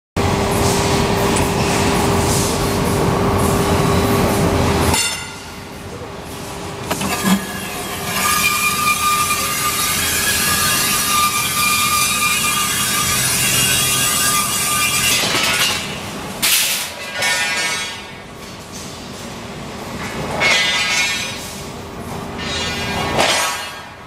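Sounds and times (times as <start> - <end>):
machine high whine: 0.2 - 16.0
machine hum: 0.2 - 17.2.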